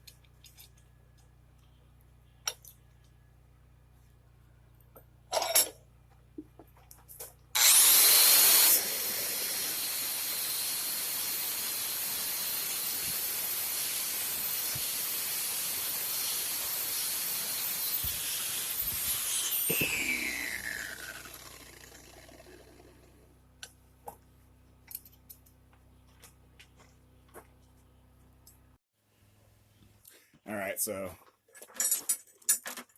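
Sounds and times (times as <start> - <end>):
electric power tool whining: 7.6 - 23.3.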